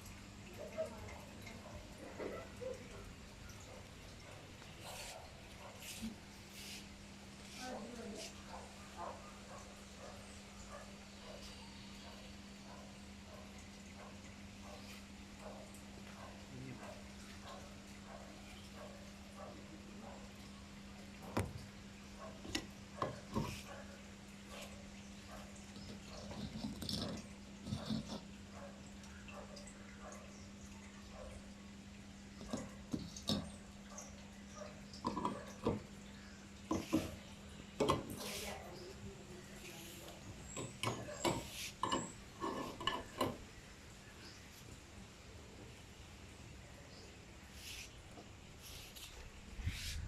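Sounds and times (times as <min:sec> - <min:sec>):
rustling and scraping: 0:04.6 - 0:08.5, 0:22.5 - 0:23.8, 0:36.7 - 0:37.3, 0:38.0 - 0:38.7, 0:39.6 - 0:43.4, 0:47.5 - 0:50.0
hard objects knocking and scraping: 0:36.7 - 0:37.2, 0:40.5 - 0:43.4.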